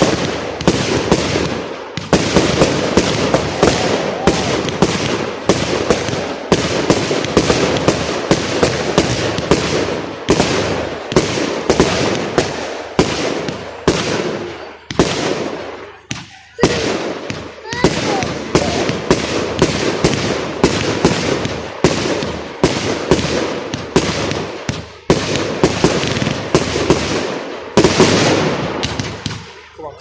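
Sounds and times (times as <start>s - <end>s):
fireworks shells bursting: 0.0s - 29.8s
fireworks crackle: 0.0s - 30.0s.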